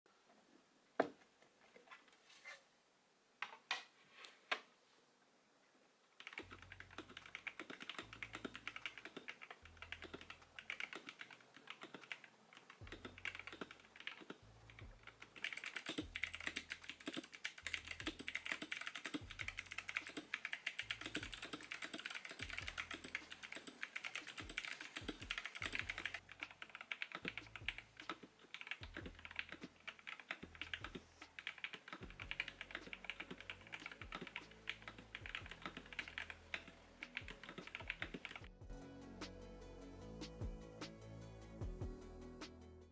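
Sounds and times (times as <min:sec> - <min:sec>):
mechanical keyboard typing: 0:06.2 - 0:38.5.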